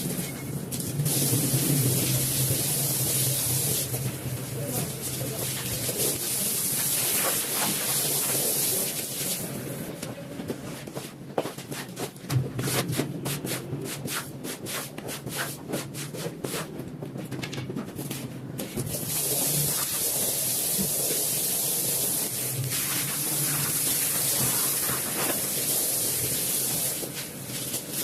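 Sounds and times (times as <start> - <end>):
water spraying hiss: 0.7 - 9.6, 18.9 - 28.0
rubbing strokes on wet rug: 4.7 - 9.4, 10.8 - 16.8.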